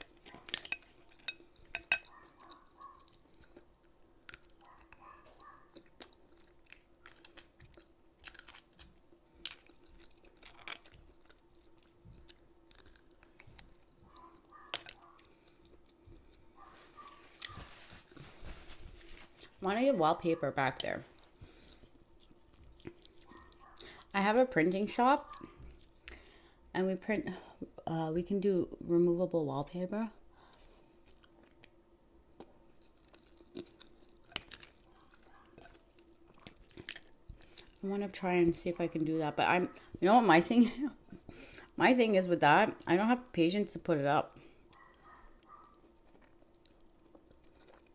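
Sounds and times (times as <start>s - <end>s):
chewing and mouth sounds: 0.0s - 17.7s, 20.7s - 24.2s, 25.2s - 26.6s, 30.4s - 31.8s, 32.4s - 37.8s, 44.2s - 47.9s
faint steady hum: 0.0s - 47.9s.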